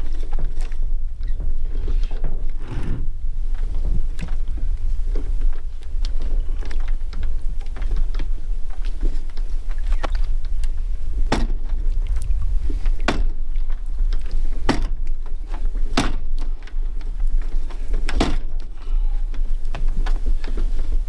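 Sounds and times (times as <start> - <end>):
steady low rumble: 1.0 - 14.2.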